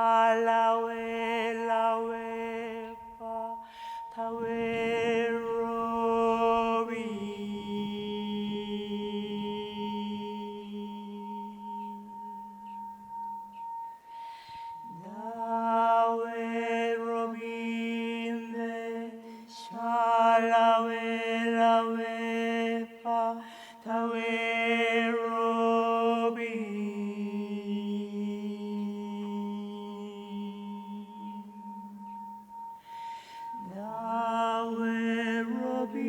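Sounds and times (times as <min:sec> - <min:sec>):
voices chanting: 0:05.1 - 0:12.8.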